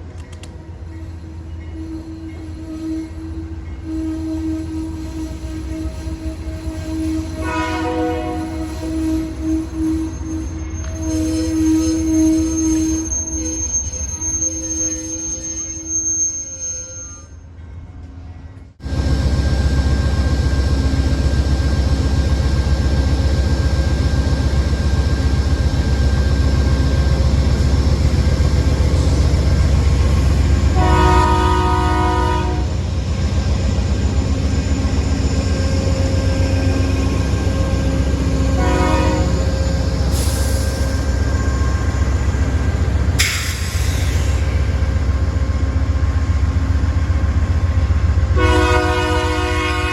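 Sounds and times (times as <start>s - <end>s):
train rumbling: 0.0s - 15.8s, 17.4s - 49.9s
train horn: 1.6s - 13.8s, 30.1s - 32.8s, 36.2s - 40.3s, 48.3s - 49.9s.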